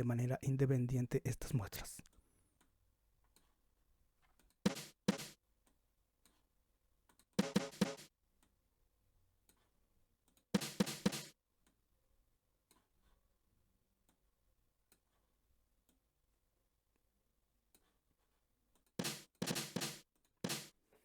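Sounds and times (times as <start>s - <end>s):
drum hits: 4.7s - 5.4s, 7.4s - 8.1s, 10.6s - 11.3s, 19.0s - 20.7s.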